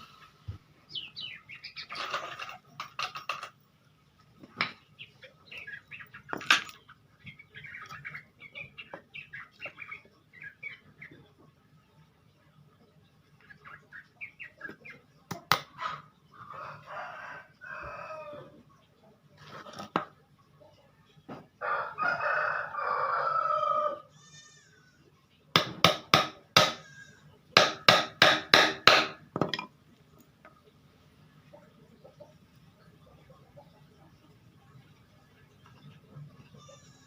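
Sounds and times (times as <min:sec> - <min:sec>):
rooster crowing: 0:16.5 - 0:18.6, 0:21.6 - 0:24.1
sharp knocks: 0:27.6 - 0:29.6.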